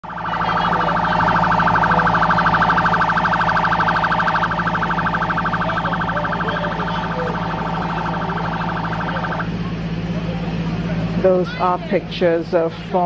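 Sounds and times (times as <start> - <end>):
fast pulsing electronic siren: 0.0 - 10.0
low hum: 0.0 - 10.6
faint distant voices: 0.0 - 13.0.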